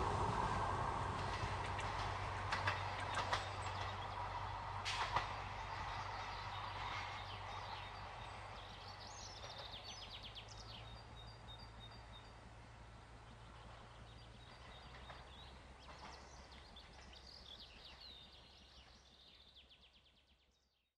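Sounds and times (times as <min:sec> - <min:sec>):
train rumble: 0:00.0 - 0:19.2
birds chirping: 0:01.2 - 0:04.7.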